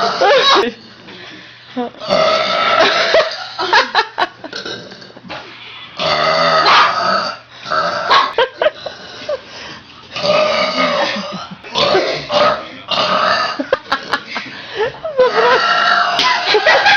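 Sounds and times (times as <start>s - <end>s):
girl belching: 0.0s - 0.7s, 2.0s - 3.1s, 4.5s - 5.2s, 6.0s - 8.1s, 10.2s - 13.7s, 15.3s - 16.2s.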